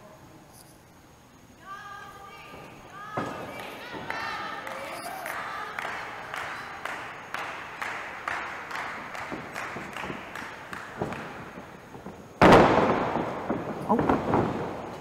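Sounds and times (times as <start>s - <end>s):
crowd clapping in unison: 3.5s - 11.8s.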